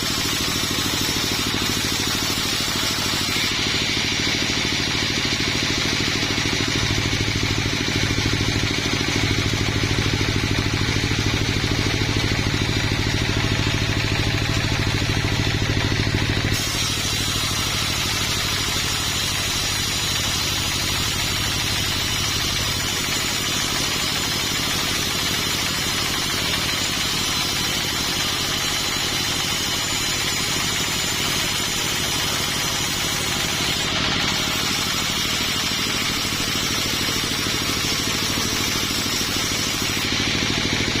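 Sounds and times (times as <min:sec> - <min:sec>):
engine droning: 0:32.5 - 0:41.0.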